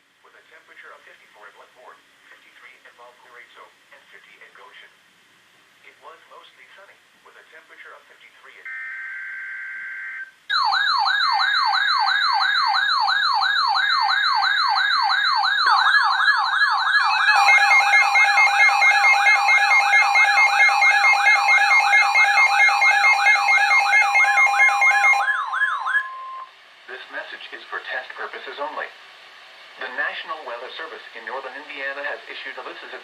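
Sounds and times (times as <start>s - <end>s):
electronic yelp siren: 8.7s - 26.5s
steady alert tones: 8.7s - 26.5s.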